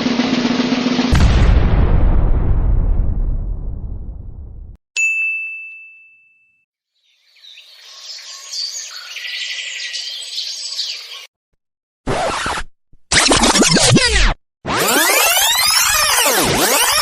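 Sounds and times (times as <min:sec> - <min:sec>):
low rumble: 0:01.1 - 0:04.8
bright bell ding: 0:05.0 - 0:06.7
birds chirping: 0:07.0 - 0:11.3.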